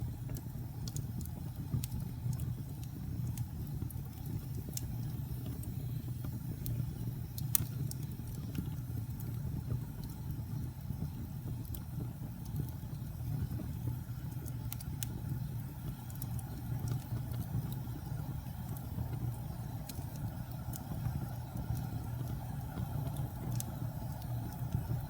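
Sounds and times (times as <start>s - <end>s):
wood fire crackling: 0.0s - 25.0s.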